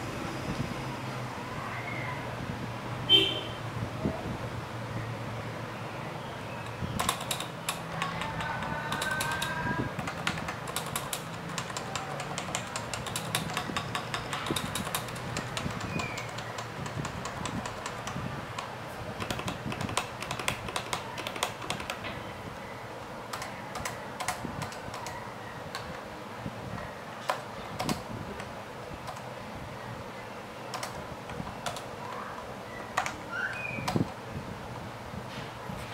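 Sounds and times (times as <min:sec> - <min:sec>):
keyboard typing: 0:06.6 - 0:26.1, 0:27.2 - 0:29.3, 0:30.7 - 0:34.2.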